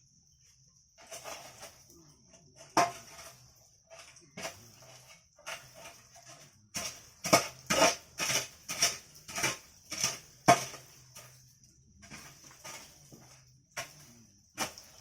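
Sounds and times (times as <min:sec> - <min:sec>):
faint high whine: 0:00.0 - 0:06.7.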